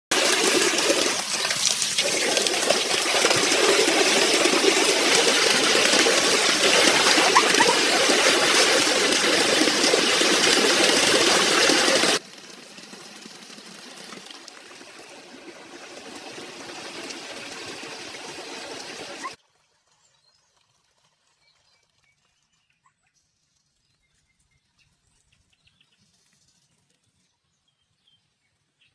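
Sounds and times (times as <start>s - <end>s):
water rushing and splashing: 0.1s - 19.4s.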